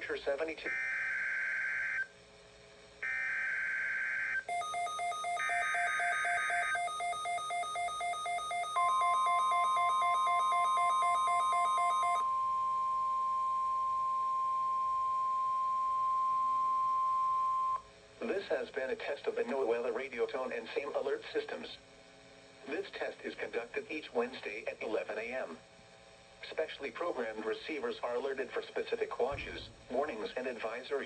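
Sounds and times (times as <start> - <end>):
rapid pulsing electronic beep: 4.5 - 12.3
warbling digital data tones: 4.5 - 12.3.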